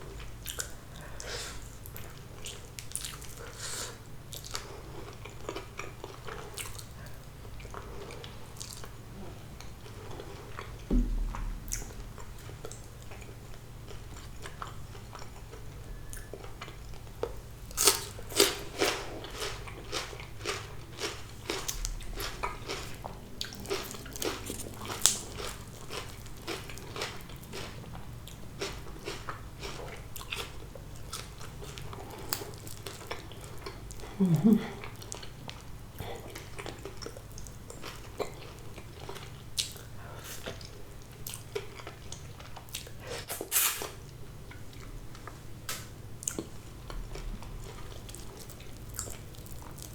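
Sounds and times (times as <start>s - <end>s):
chewing crisp fried fish: 0.0s - 8.9s, 16.5s - 45.4s, 46.2s - 49.9s
low thump: 10.9s - 13.3s.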